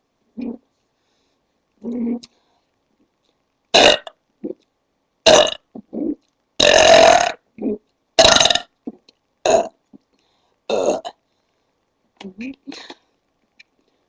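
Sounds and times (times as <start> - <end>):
woman belching loudly: 3.8 - 4.6, 5.3 - 8.7.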